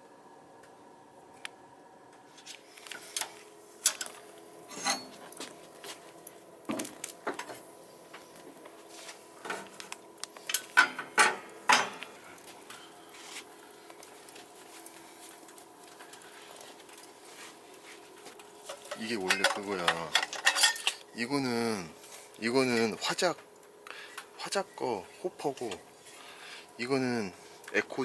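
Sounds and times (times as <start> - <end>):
metal utensils clinking on dishes: 18.7 - 21.1.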